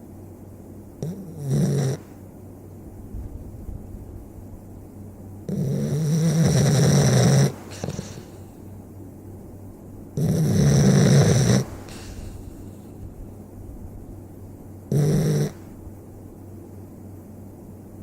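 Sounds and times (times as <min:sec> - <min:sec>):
pet snoring: 0:01.0 - 0:02.2, 0:05.5 - 0:08.6, 0:10.2 - 0:12.8, 0:14.9 - 0:15.7
soft breath: 0:07.5 - 0:08.8, 0:11.6 - 0:13.2.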